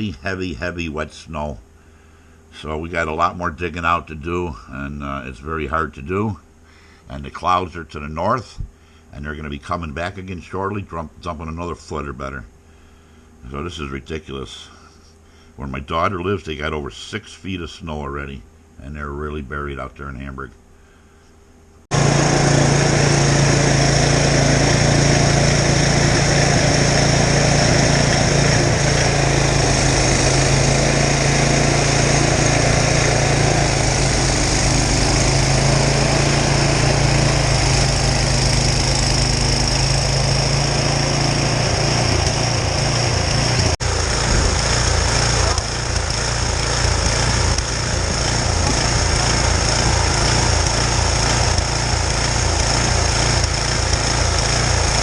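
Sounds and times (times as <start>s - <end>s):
snowblower engine running: 21.9s - 55.0s.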